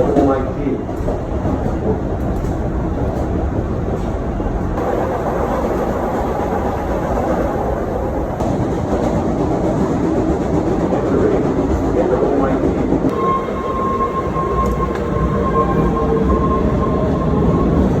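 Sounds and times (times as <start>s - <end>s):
train wheels rumbling on rails: 0.0s - 18.0s
steady high whine: 13.1s - 18.0s.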